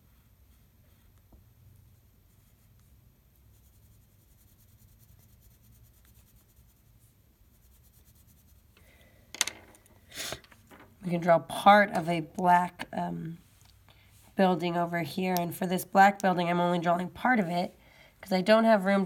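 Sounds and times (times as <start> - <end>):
pencil scratching on paper: 1.9 - 8.7.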